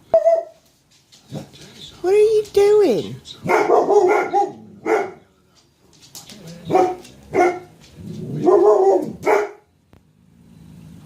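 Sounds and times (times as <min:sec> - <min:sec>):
dog barking: 0:03.4 - 0:05.2, 0:06.7 - 0:07.7, 0:08.3 - 0:09.7.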